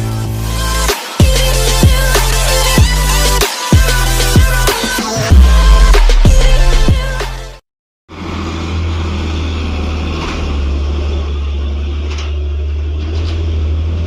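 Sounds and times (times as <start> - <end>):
vehicle engine rumbling: 5.2 - 7.2, 8.1 - 14.0.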